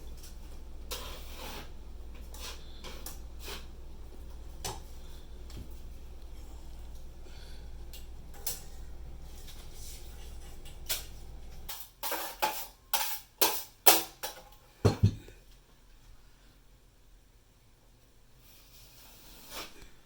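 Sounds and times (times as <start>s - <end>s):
low steady hum: 0.0s - 12.1s.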